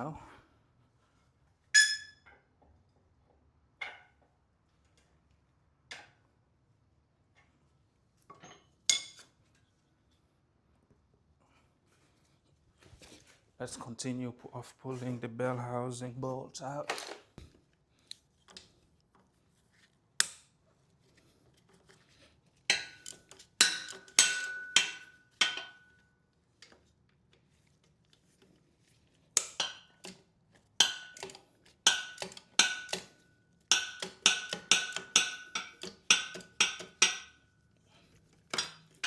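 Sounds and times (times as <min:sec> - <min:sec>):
metal tool strikes ringing: 0:01.8 - 0:02.2, 0:23.6 - 0:25.8.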